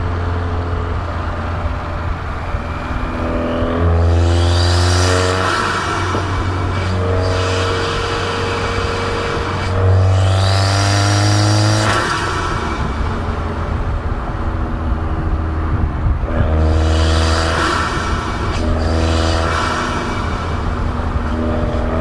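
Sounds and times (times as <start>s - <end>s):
car engine accelerating: 0.0s - 22.0s
road noise: 0.0s - 22.0s
high turbo whistle: 2.8s - 13.5s.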